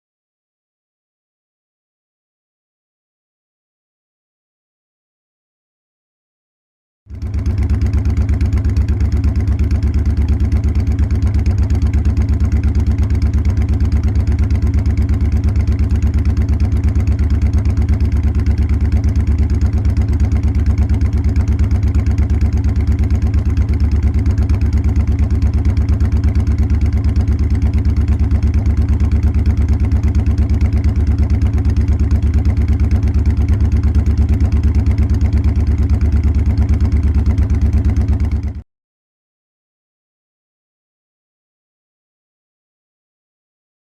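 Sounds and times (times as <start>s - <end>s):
motorcycle engine idling: 7.1s - 38.6s.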